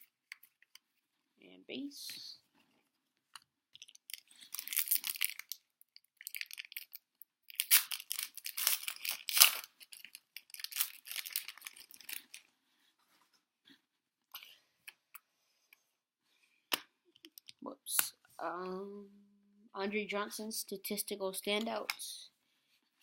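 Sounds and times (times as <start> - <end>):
foil wrapper tearing and crinkling: 4.1 - 5.6, 6.2 - 12.4.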